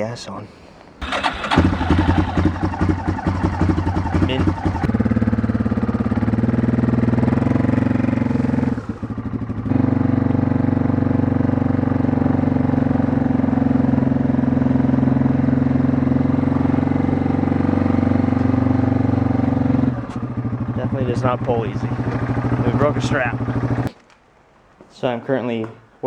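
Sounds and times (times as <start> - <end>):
small gasoline engine running: 1.0 - 14.9, 19.0 - 23.9.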